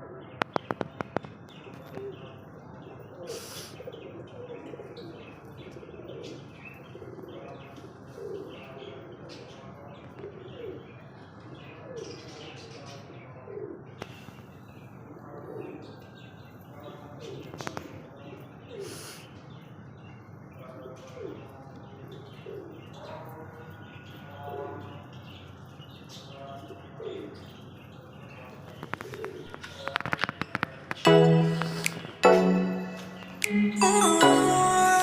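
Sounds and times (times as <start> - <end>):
high bird chirps: 30.9 - 35.0.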